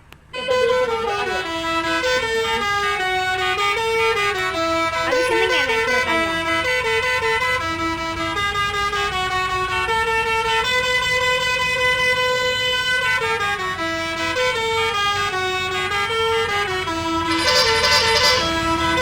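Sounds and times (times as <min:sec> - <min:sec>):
electronic toy train tune: 0:00.4 - 0:13.2, 0:16.6 - 0:19.0.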